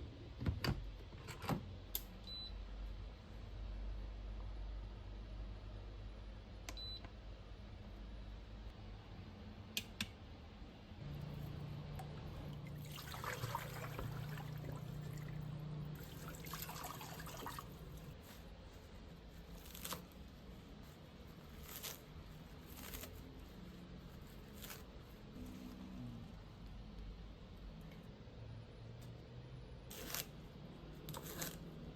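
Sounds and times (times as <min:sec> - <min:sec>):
low hum: 0:10.4 - 0:18.2
water trickling and pouring: 0:12.0 - 0:18.2.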